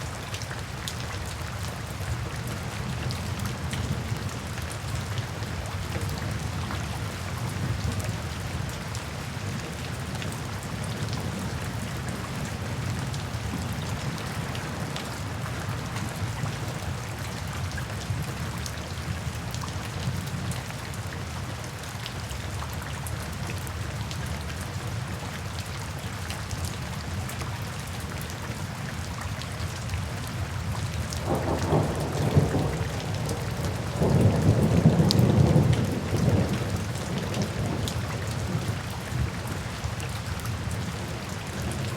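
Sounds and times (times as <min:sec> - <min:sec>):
heavy rain falling: 0:00.0 - 0:41.9.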